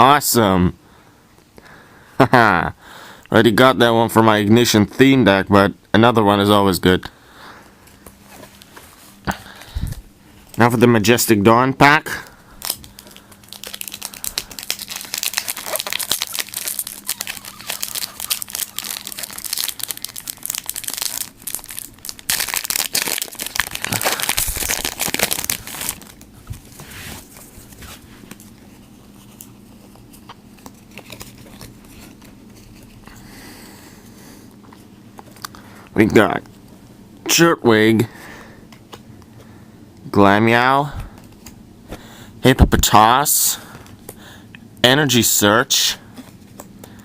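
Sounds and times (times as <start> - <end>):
foil wrapper crinkling and tearing: 12.6 - 33.0.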